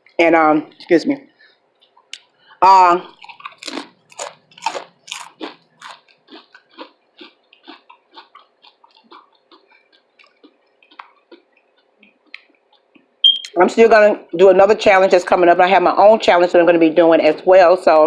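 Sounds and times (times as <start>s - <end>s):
person chewing crunchy food: 0.7s - 13.2s.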